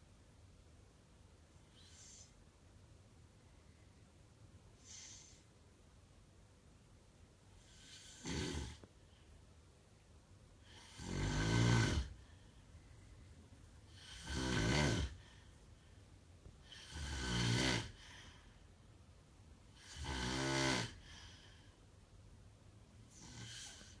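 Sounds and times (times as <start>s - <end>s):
man snoring: 7.7s - 8.8s, 10.7s - 12.2s, 14.0s - 15.2s, 16.7s - 18.0s, 19.8s - 21.1s, 23.1s - 24.0s.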